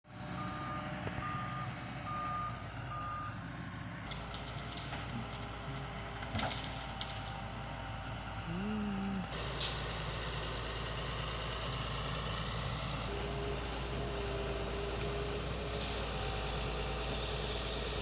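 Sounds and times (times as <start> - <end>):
excavator engine rumble: 0.1 - 18.0
excavator alarm beeping: 0.2 - 3.4
sharp cracks and crackles: 4.1 - 7.7.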